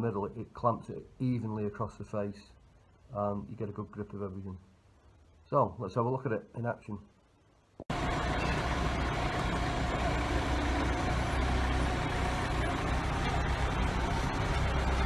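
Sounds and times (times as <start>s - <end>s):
forklift engine running: 7.9s - 15.0s.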